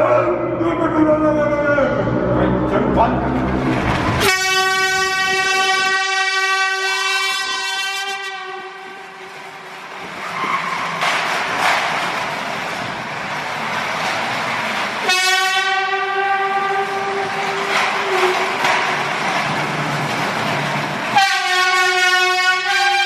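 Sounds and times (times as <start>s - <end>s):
compressed-air horn blasting: 4.2s - 9.3s, 15.0s - 18.5s, 21.2s - 23.0s.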